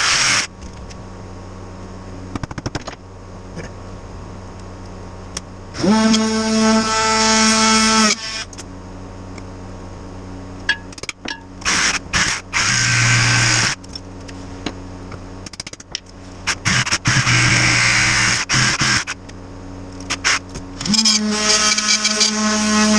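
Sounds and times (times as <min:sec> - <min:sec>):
power tool cutting tire: 0:00.0 - 0:00.5, 0:05.8 - 0:08.6, 0:11.6 - 0:13.8, 0:16.4 - 0:19.2, 0:20.0 - 0:22.9
power tool motor running: 0:00.0 - 0:00.5, 0:05.7 - 0:08.6, 0:11.6 - 0:13.8, 0:16.4 - 0:19.2, 0:20.0 - 0:22.9.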